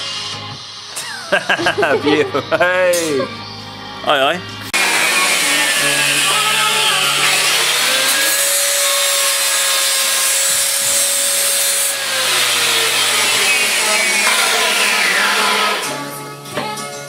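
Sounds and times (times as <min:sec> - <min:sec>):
faint background music: 0:00.0 - 0:07.8
power tool grinding sheet steel: 0:04.8 - 0:16.3.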